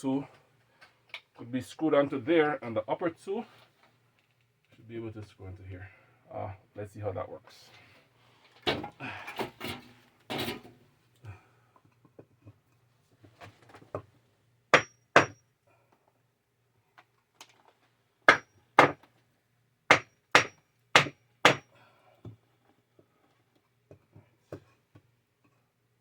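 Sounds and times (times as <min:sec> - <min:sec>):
hammer striking wooden block: 0:14.7 - 0:15.4, 0:18.3 - 0:19.0, 0:19.9 - 0:21.7
faint knocks and handling: 0:22.2 - 0:25.7.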